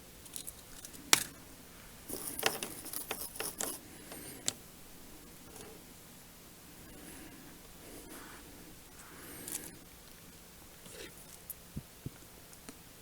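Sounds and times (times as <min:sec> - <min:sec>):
tools rattling and scraping: 0:02.0 - 0:04.6
hand tools clicking: 0:02.1 - 0:04.6.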